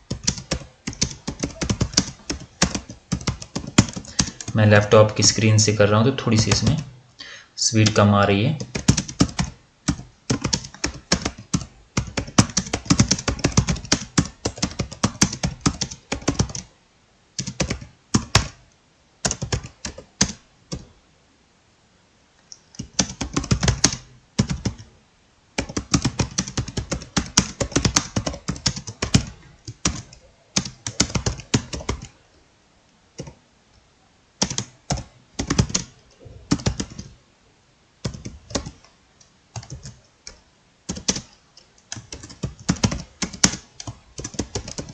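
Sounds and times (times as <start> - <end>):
fast typing on laptop keyboard: 0.1 - 5.4, 6.4 - 6.8, 7.8 - 16.7, 17.4 - 18.6, 19.2 - 20.9, 22.7 - 24.9, 25.6 - 32.2, 33.2 - 33.4, 34.4 - 37.2, 38.0 - 38.9, 39.5 - 44.9.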